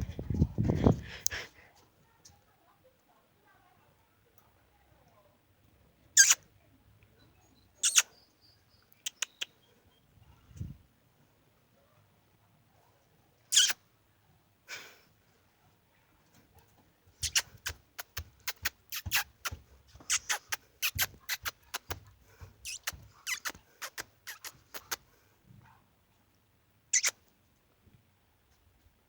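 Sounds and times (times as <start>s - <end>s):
mouth squeaks and clicks: 6.2s - 6.4s, 7.8s - 8.2s, 8.9s - 9.6s, 13.5s - 13.8s, 17.2s - 25.0s, 26.9s - 27.2s.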